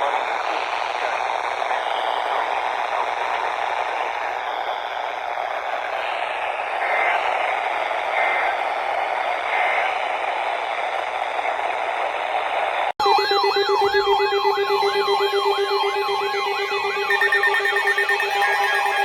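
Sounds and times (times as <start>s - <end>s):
electronic siren alert tone: 13.0s - 19.0s.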